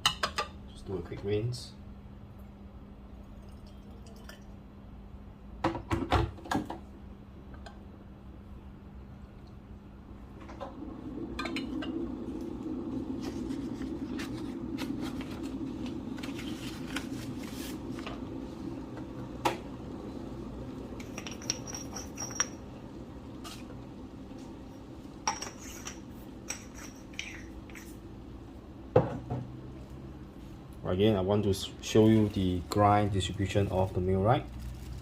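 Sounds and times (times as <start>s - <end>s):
steady low rush: 8.4s - 21.0s
ceramic and glass clinking: 21.0s - 22.8s.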